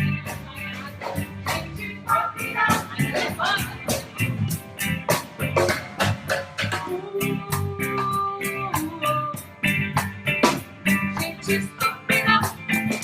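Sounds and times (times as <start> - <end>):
melody of held and plucked notes: 0.0 - 13.0.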